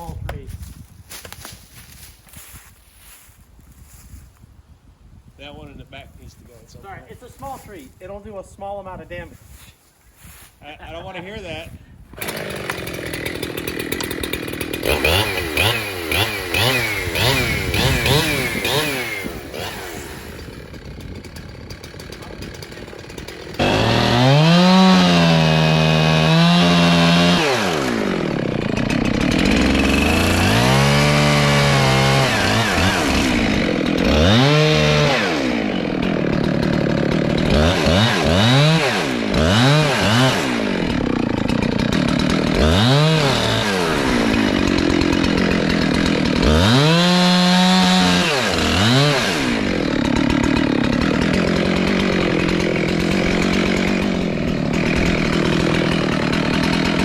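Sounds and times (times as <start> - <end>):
chainsaw revving and cutting: 12.1 - 57.0.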